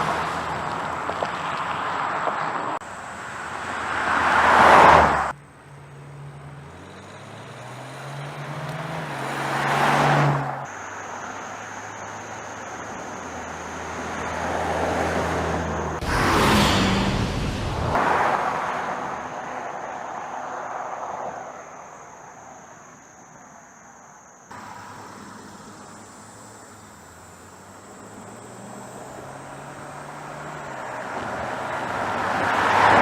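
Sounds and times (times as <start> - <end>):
car driving past: 3.5 - 5.4, 6.0 - 10.6, 13.5 - 21.8.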